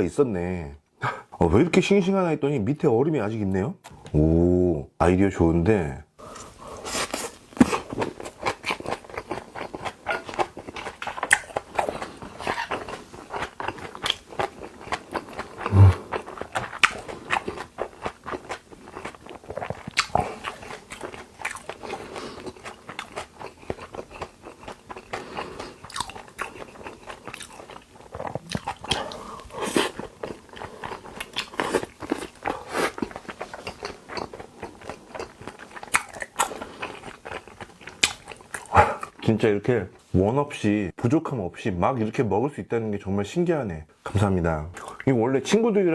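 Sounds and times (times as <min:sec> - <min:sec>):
wet chewing and biting: 0:07.0 - 0:39.2.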